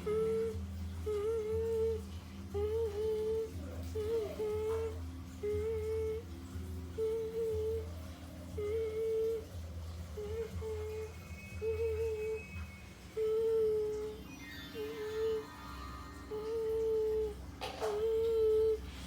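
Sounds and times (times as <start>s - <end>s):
child humming: 0.0s - 6.3s, 7.0s - 9.5s, 10.1s - 12.4s, 13.2s - 14.2s, 16.2s - 19.0s.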